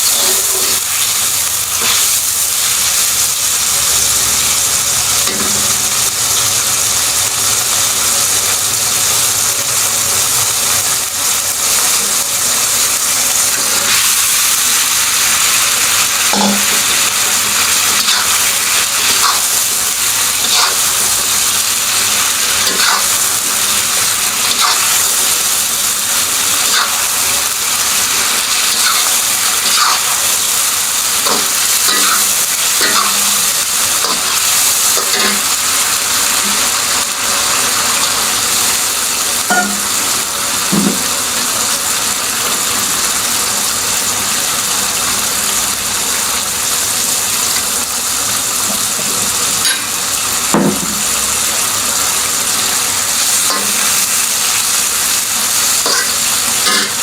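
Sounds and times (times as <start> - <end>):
chicken sizzling in a pan: 0.0 - 57.0
spatula scraping a pan: 22.6 - 23.2.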